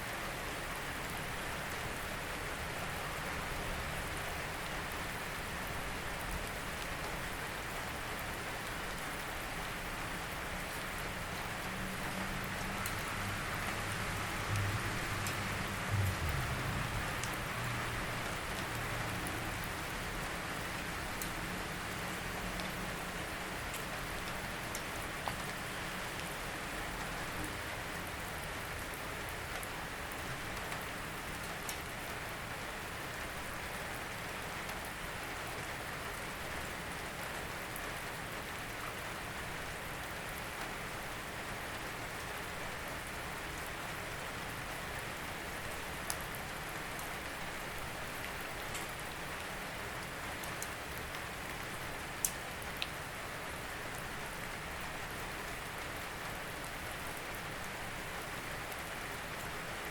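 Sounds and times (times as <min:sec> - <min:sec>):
steady rain hiss: 0:00.0 - 0:59.9
sharp drip ticks: 0:52.2 - 0:52.9.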